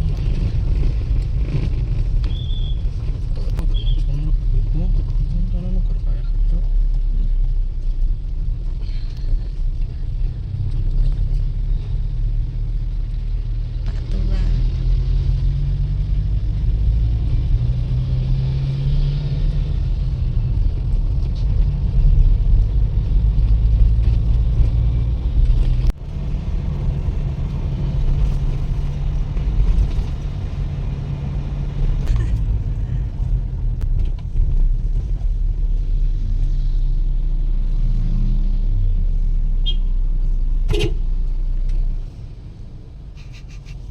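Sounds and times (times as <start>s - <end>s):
vehicle engine and road rumble: 0.0s - 43.9s.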